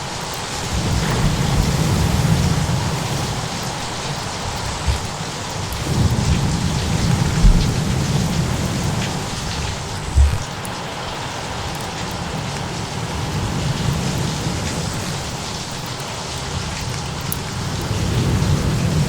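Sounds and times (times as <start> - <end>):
heavy rain: 0.0 - 19.0
rolling thunder: 0.6 - 10.7.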